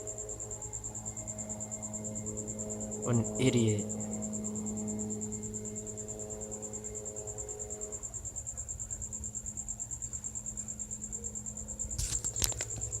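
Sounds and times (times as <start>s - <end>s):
cricket chirping: 0.0s - 13.0s
low steady hum: 0.0s - 13.0s.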